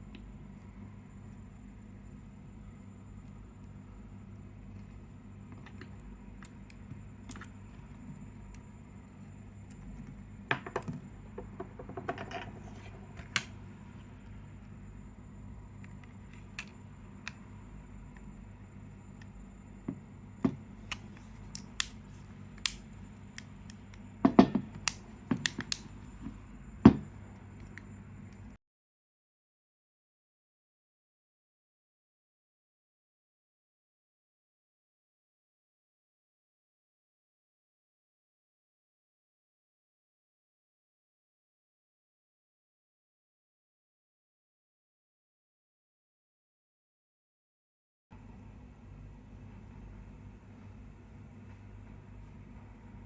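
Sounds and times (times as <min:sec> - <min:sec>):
steady low hum: 0:00.0 - 0:28.6, 0:48.1 - 0:53.0.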